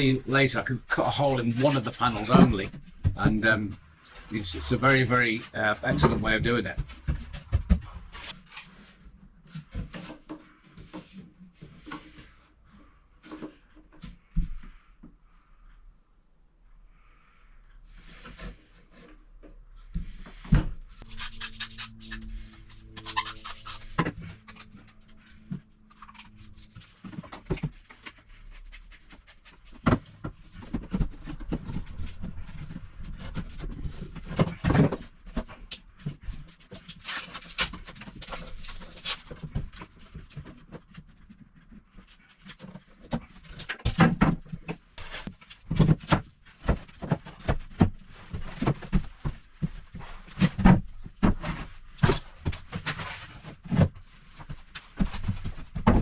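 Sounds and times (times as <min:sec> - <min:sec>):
wooden boards knocking and scraping: 0:05.4 - 0:08.9.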